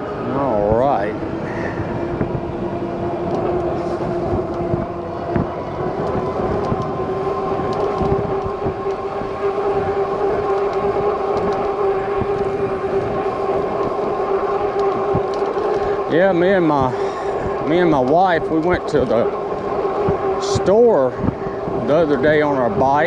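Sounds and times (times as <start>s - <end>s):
electric motor whining: 0.0s - 23.0s
wind rumble on microphone: 0.0s - 23.0s.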